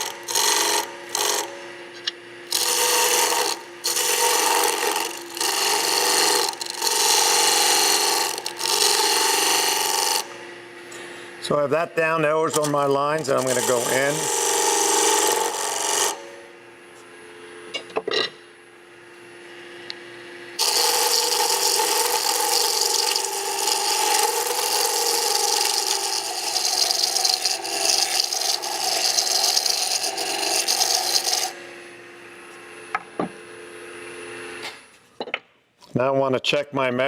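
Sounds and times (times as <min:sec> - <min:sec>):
chisel cutting spinning wood: 0:00.0 - 0:10.6, 0:11.3 - 0:16.4, 0:20.6 - 0:33.4
wood lathe humming: 0:00.0 - 0:17.7, 0:19.2 - 0:34.7.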